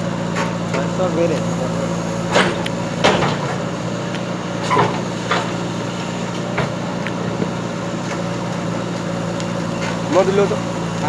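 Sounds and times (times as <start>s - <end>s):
diesel engine running: 0.0s - 11.0s
sharp knocks: 2.3s - 3.6s.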